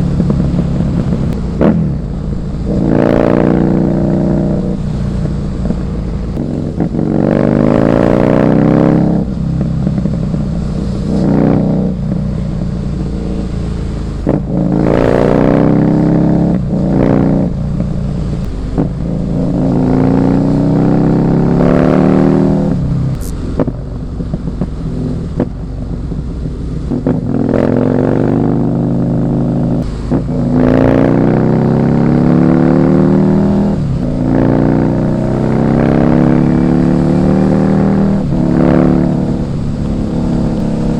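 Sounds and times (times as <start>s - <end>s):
motorcycle engine accelerating: 0.0s - 40.9s.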